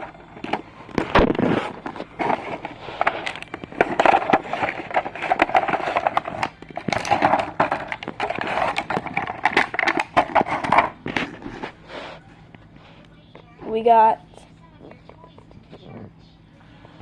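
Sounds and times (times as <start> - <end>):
plastic packaging crinkling: 0.0 - 11.8.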